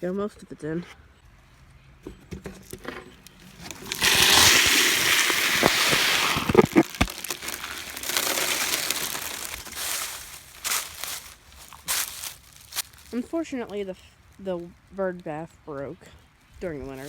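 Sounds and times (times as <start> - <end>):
bird seed pouring from bag: 3.4 - 13.1.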